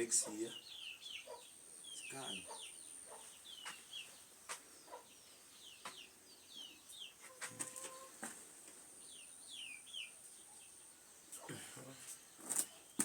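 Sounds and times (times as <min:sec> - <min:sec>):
chickens peeping: 0:00.0 - 0:13.0
chicken drawn-out call: 0:07.2 - 0:08.3.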